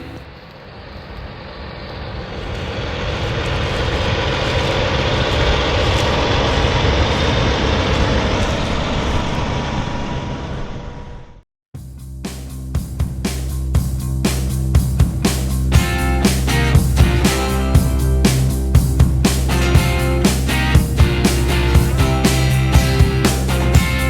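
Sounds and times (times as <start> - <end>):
machine engine passing by: 0.0 - 11.4.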